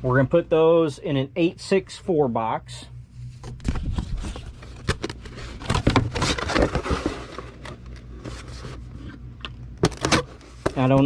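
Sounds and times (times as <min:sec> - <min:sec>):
packing materials rustling and scraping: 0:03.2 - 0:09.2.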